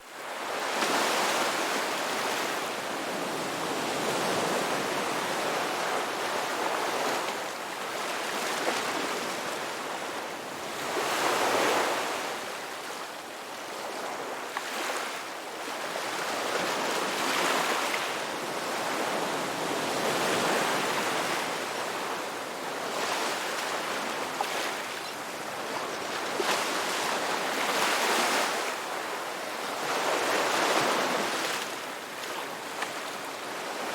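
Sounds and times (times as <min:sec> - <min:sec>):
ocean waves breaking on beach: 0:00.0 - 0:33.9.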